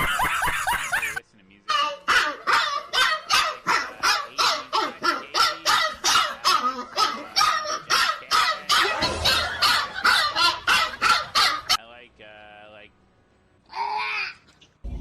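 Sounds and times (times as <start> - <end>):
dog barking rapidly: 1.7 - 11.8.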